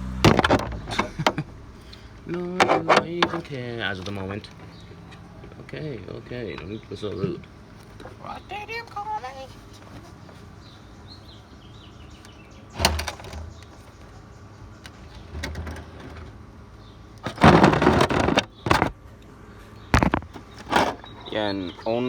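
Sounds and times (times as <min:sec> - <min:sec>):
rustling scrape: 0:17.3 - 0:19.0.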